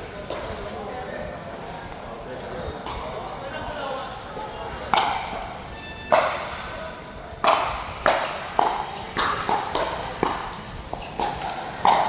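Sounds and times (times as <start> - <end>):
ball bouncing on court: 6.1 - 12.0
paddles striking plastic ball: 7.4 - 12.0.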